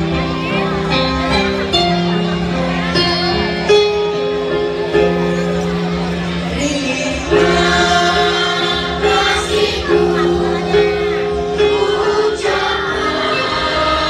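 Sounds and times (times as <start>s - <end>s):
song with several voices: 6.5s - 14.0s.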